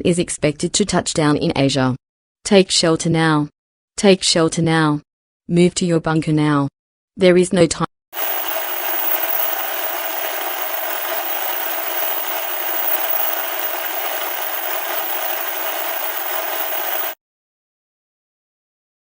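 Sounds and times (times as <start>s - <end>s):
radio static hiss: 8.2s - 17.2s.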